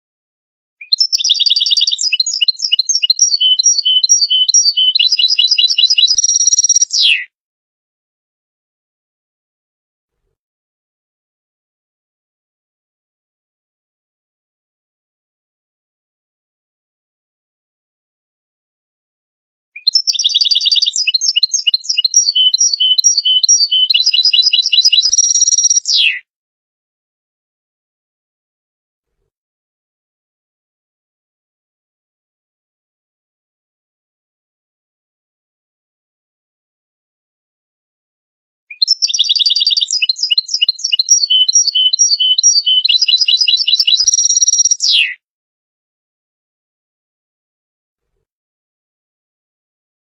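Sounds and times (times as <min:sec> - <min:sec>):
finch singing: 0:00.8 - 0:07.2, 0:19.8 - 0:26.2, 0:38.7 - 0:45.2.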